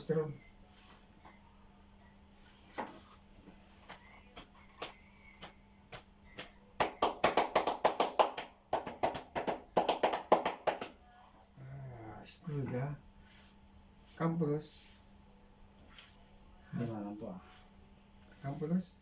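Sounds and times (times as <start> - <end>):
hands slapping a person's back: 3.8 - 11.0.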